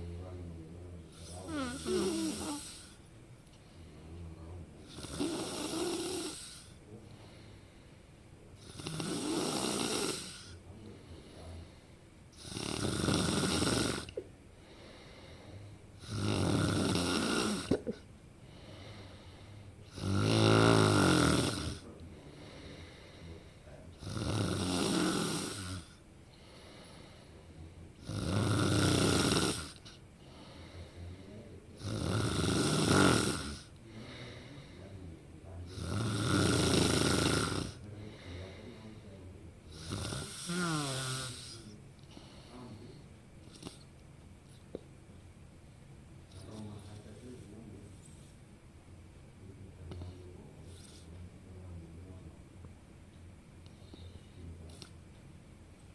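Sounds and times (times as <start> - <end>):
person snoring: 1.1 - 3.0, 4.8 - 6.8, 8.6 - 10.6, 12.4 - 14.2, 14.8 - 18.0, 18.8 - 23.3, 24.0 - 27.1, 28.0 - 34.9, 35.7 - 39.0, 39.7 - 42.6.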